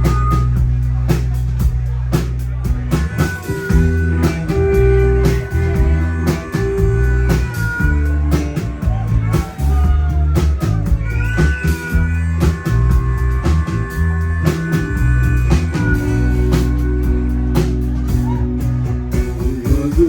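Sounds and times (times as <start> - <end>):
rock band playing: 0.0 - 20.0
lead guitar bending notes: 3.2 - 8.8.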